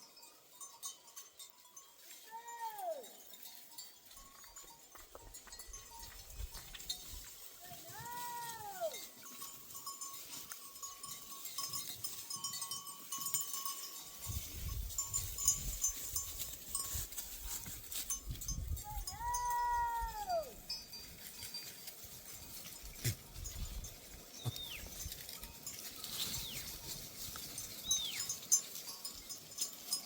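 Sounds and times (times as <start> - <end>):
faint high tinkling: 0.0 - 30.0
sheep or goat bleating: 7.7 - 9.0.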